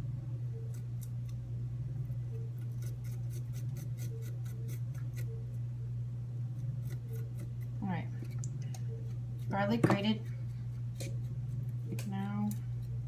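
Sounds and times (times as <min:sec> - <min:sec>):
low hum: 0:00.0 - 0:13.0
garlic scraping on a grater: 0:02.7 - 0:05.2.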